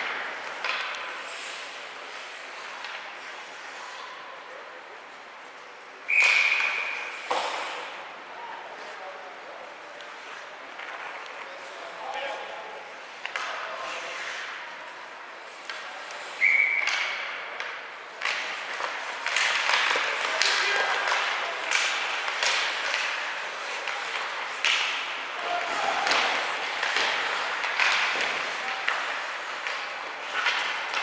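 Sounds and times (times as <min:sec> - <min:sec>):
hockey sticks and puck clacking: 0:00.0 - 0:04.0, 0:06.1 - 0:08.2, 0:09.7 - 0:31.0
whistle blast: 0:06.1 - 0:07.0, 0:16.4 - 0:16.9
spectators' voices: 0:07.3 - 0:31.0.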